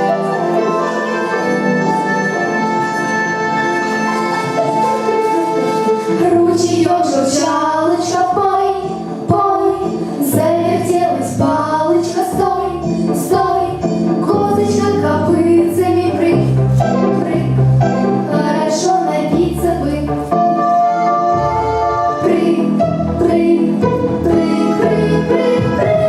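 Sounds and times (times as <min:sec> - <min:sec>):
instrumental accompaniment: 0:00.0 - 0:26.0
women singing together: 0:06.2 - 0:16.5, 0:22.2 - 0:26.0.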